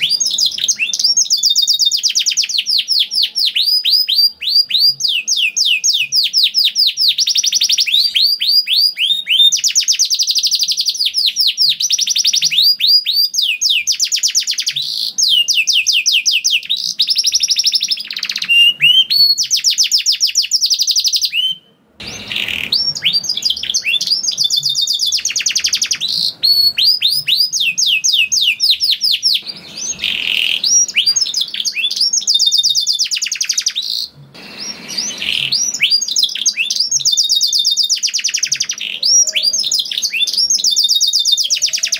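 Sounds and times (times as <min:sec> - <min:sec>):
canary singing trills: 0:00.0 - 0:41.9.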